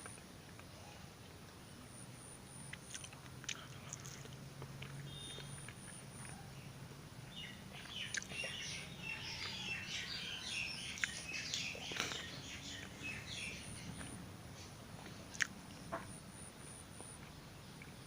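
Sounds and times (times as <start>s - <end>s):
birds chirping: 4.8s - 18.0s.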